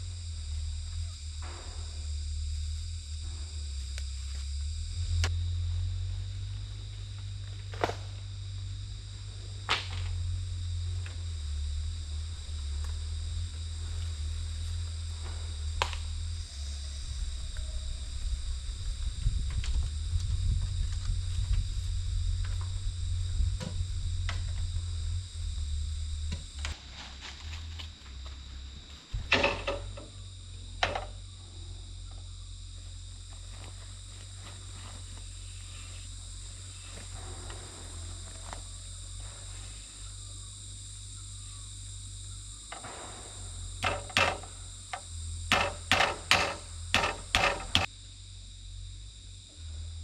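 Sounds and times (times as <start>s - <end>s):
insects chirring: 0.0s - 50.0s
sharp knocks: 42.7s - 44.5s, 45.5s - 47.9s.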